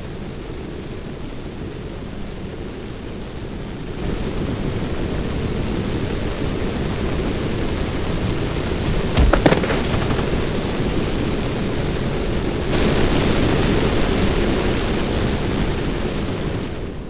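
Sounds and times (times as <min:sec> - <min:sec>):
short sharp crackle: 0:08.9 - 0:11.0.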